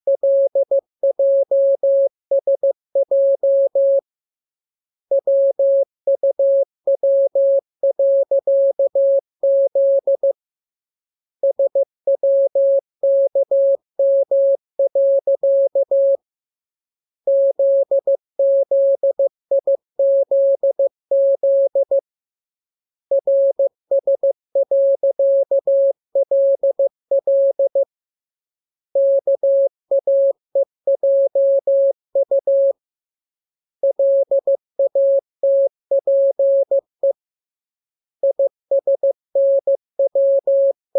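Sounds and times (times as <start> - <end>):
morse code beeps: 0.1 - 4.0, 5.1 - 10.4, 11.4 - 16.2, 17.3 - 22.0, 23.1 - 27.9, 29.0 - 32.7, 33.8 - 37.2, 38.2 - 40.9.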